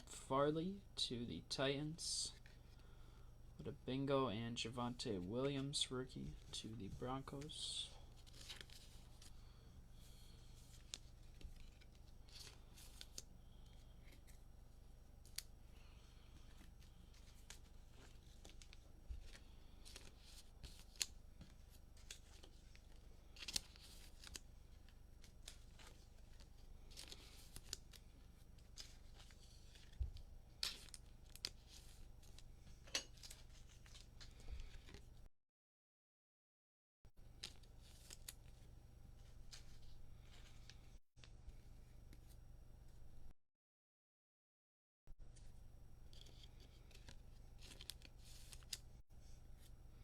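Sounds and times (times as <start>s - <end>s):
trading cards rustling and clicking: 5.0s - 35.2s, 45.3s - 48.9s.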